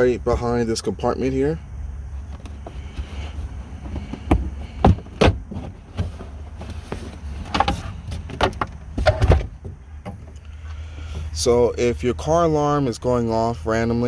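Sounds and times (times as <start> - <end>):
steady low hum: 0.0 - 14.0
trunk cover knocks and clicks: 2.2 - 10.4.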